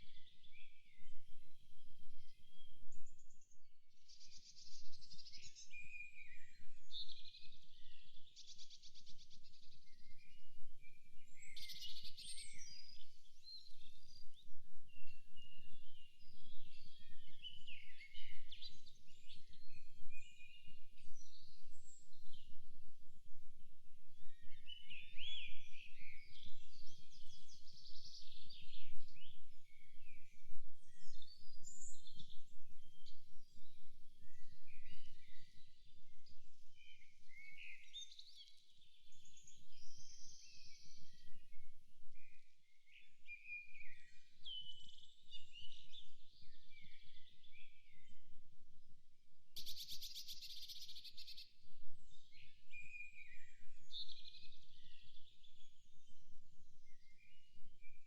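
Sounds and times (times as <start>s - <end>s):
birds singing and chirping: 49.6s - 58.0s.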